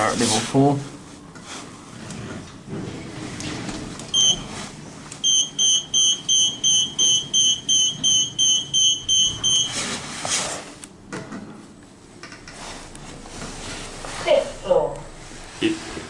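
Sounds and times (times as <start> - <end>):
lift short high beeps: 4.2 - 4.5, 5.2 - 9.8.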